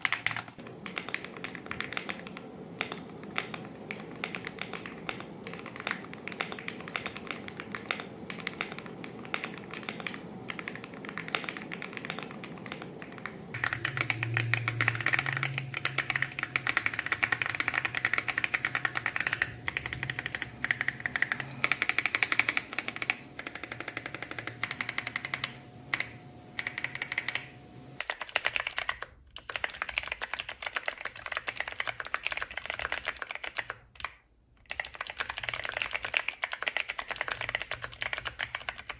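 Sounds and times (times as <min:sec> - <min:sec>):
fast mechanical keyboard typing: 0:00.0 - 0:38.9
low hum: 0:11.6 - 0:28.0.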